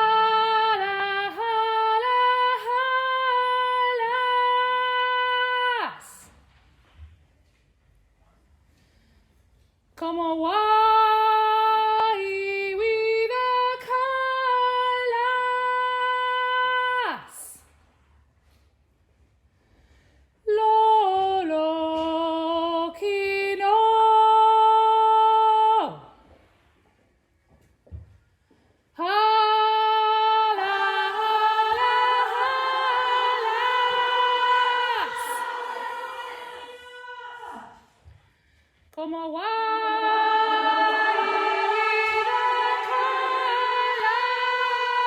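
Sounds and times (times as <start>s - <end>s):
woman singing unaccompanied: 29.0s - 37.7s, 39.0s - 45.0s.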